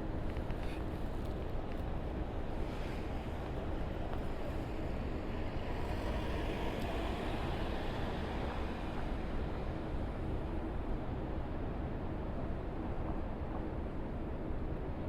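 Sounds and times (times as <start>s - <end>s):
passing vehicles: 2.5s - 10.8s.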